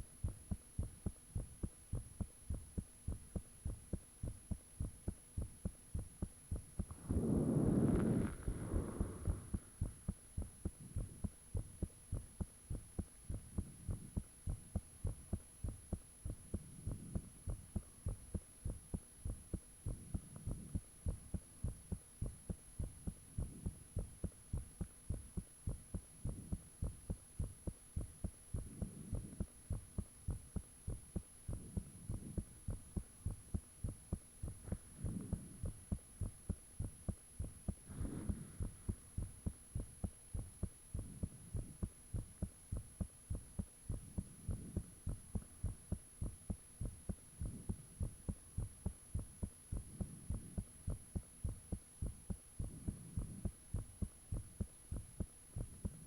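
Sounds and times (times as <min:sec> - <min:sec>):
heartbeat thuds: 0:00.0 - 0:56.0.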